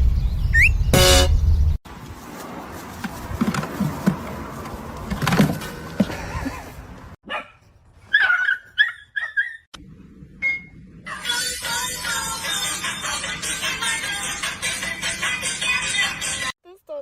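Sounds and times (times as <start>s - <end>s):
dog yipping: 7.3s - 9.7s.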